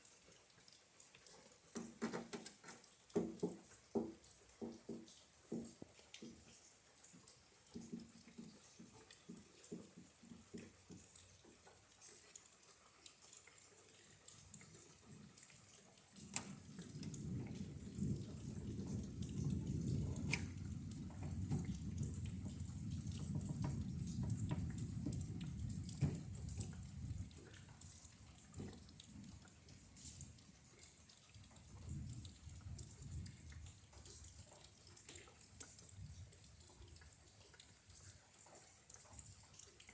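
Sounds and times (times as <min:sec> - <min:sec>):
rain dripping and pattering: 0:00.0 - 0:39.9
thunder crack and rumble: 0:16.4 - 0:29.4, 0:31.7 - 0:33.8.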